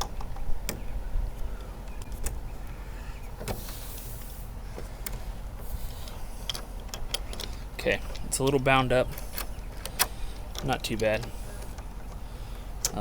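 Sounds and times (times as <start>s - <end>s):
metal lock parts clicking: 6.0s - 11.9s.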